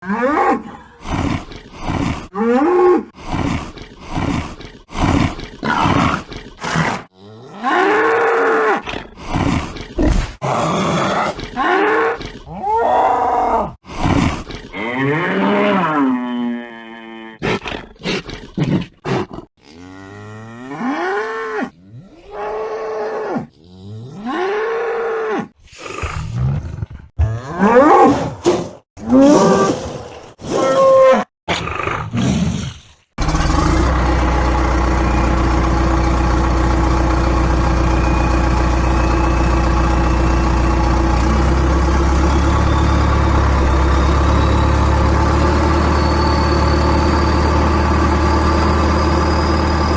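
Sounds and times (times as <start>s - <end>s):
cartoon bellowing moo calls: 0.0s - 1.0s, 2.3s - 3.1s, 7.1s - 8.9s, 10.4s - 13.8s, 14.7s - 17.4s, 27.2s - 28.2s
heavy engine idling: 33.2s - 49.9s.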